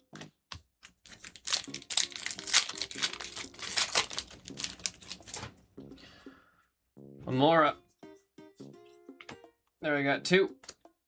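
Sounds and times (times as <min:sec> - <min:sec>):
foil wrapper crinkling and tearing: 0:00.8 - 0:05.5.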